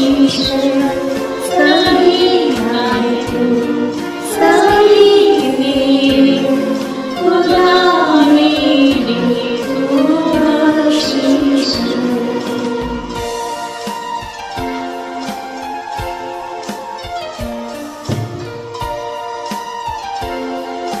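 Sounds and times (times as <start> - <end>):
young voices singing prayer song: 0.0 - 13.3
instrumental accompaniment: 0.0 - 21.0.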